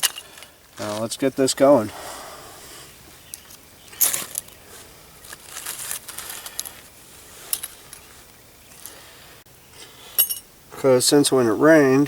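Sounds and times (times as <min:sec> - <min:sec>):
scrapes and clicks lighting fire: 0:05.2 - 0:09.0.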